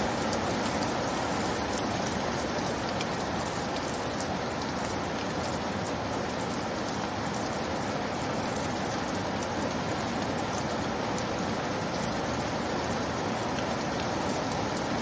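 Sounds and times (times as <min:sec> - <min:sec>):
single raindrops ticking: 0:00.0 - 0:07.6
steady rain hiss: 0:00.0 - 0:15.0.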